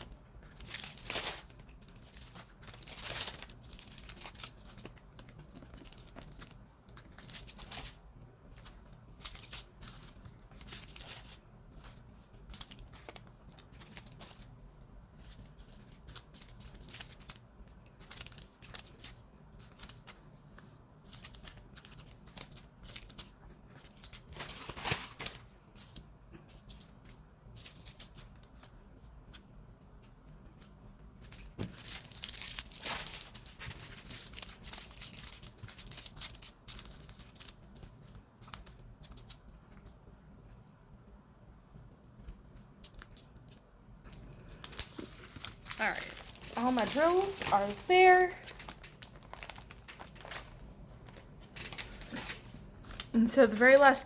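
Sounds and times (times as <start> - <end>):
plastic bags crinkling: 0.0 - 14.5, 15.2 - 20.2, 21.0 - 26.0, 31.3 - 37.6, 44.1 - 54.0.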